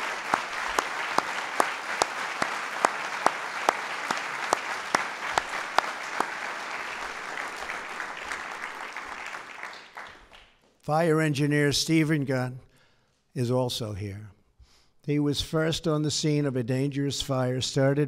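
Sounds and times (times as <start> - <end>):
audience applauding: 0.0 - 10.6
evenly spaced sharp clap: 0.0 - 10.7.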